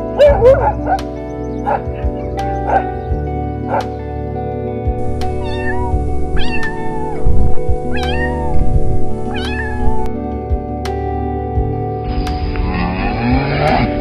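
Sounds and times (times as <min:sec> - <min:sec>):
background music: 0:00.0 - 0:14.0
cat meowing: 0:05.2 - 0:10.1.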